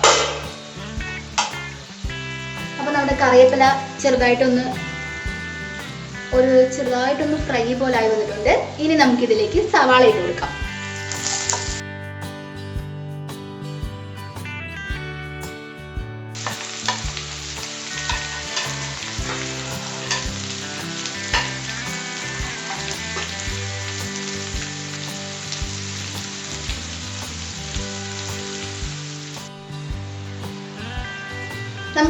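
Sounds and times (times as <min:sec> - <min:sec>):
onions sizzling in hot oil: 0:16.4 - 0:29.4.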